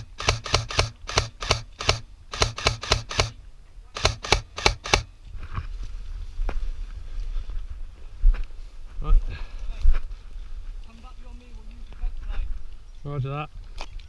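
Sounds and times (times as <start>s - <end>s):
airsoft gun shots: 0.0s - 3.4s, 4.0s - 5.1s.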